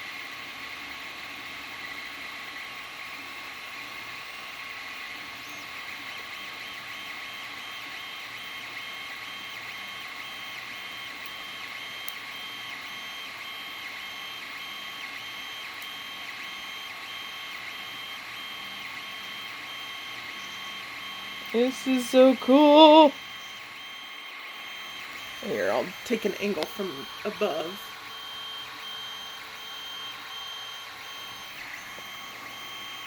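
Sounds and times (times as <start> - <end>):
pulsing motor whine: 1.8 - 33.0
stepper motors whining: 5.2 - 33.0
fan hum: 17.5 - 29.0.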